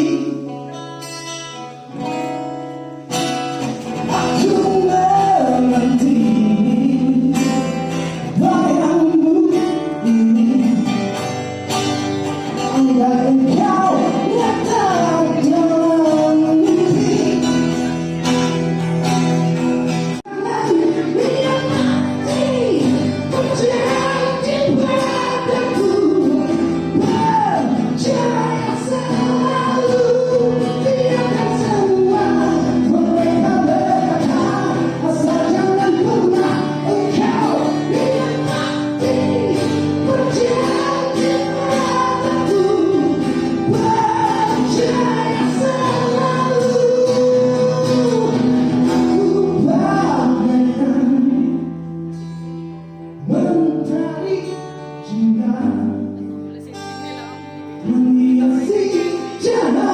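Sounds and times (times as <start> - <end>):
person singing: 0.0 - 2.3, 3.6 - 18.9, 20.1 - 51.9, 53.2 - 59.9
live band playing chords: 0.0 - 59.9.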